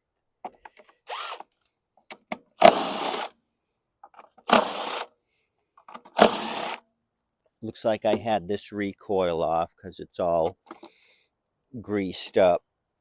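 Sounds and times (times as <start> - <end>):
cordless driver whirring: 1.1 - 1.4, 2.6 - 3.3, 4.5 - 5.1, 6.2 - 6.8.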